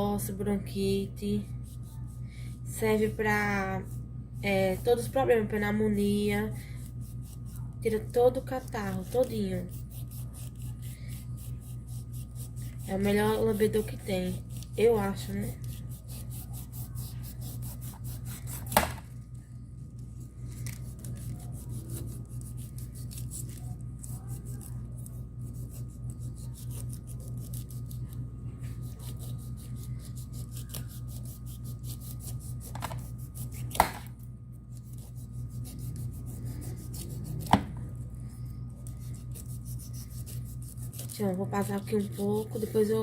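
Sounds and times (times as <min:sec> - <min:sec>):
steady low hum: 0:00.0 - 0:43.0
knife rasping through pineapple skin: 0:08.6 - 0:18.9, 0:20.6 - 0:33.9, 0:34.7 - 0:37.7, 0:38.8 - 0:43.0.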